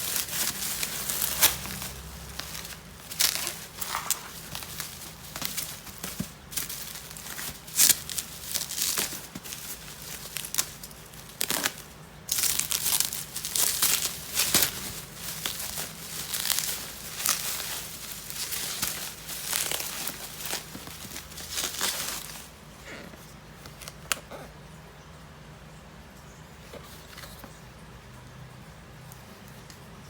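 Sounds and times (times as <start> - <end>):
packaging crinkling and tearing: 0.0 - 22.6.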